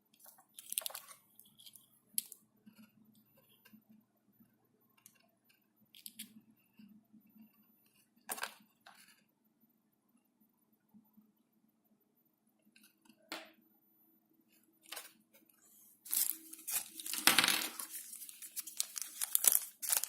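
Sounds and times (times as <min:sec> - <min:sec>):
packaging clicks taps and rustles: 0:00.2 - 0:02.4, 0:16.1 - 0:20.0.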